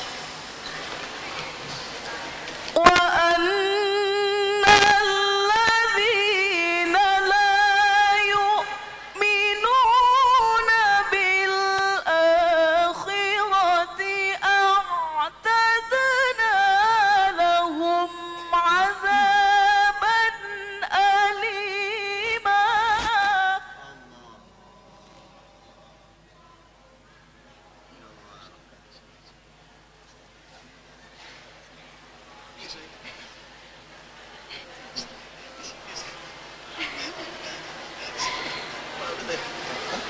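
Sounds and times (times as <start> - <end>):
person reciting melodically: 2.8 - 24.9.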